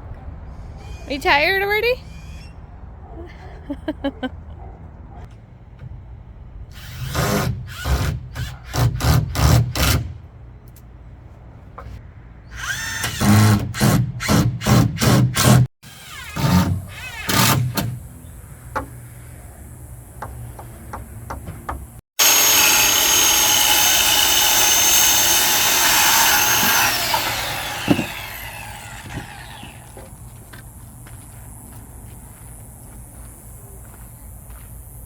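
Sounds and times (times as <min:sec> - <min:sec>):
power tool cutting wood: 0:22.2 - 0:30.0.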